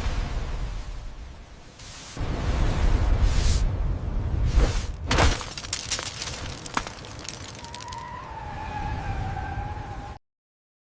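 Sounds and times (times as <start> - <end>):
glass and debris shattering: 5.1 - 8.0.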